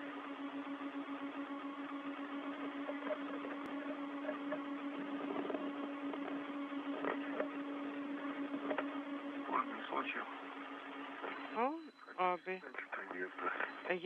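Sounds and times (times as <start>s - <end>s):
radio hiss and hum: 0.0s - 14.0s
faint crackles: 2.5s - 14.0s.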